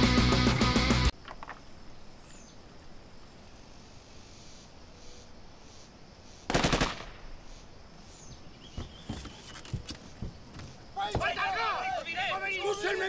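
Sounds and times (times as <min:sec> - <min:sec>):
automatic gunfire burst: 0:06.5 - 0:07.2.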